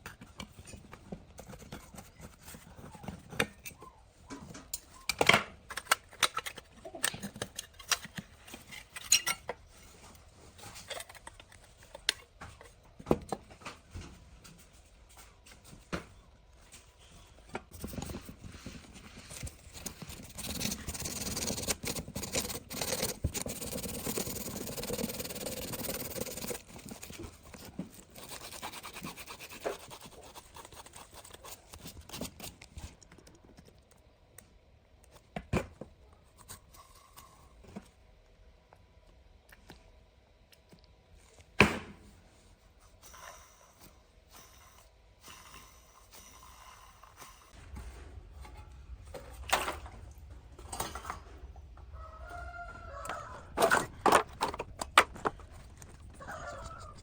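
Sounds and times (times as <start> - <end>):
scraping or scrubbing: 17.7 - 32.5.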